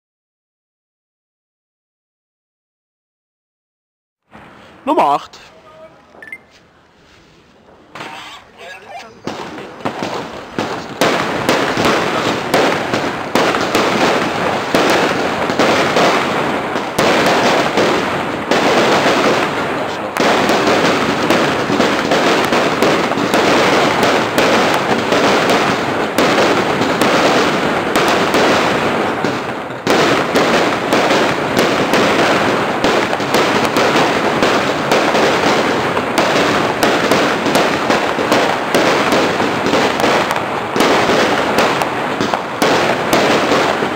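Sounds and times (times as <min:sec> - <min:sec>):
firework shots and crackling: 0:04.3 - 0:05.3, 0:07.6 - 0:43.9.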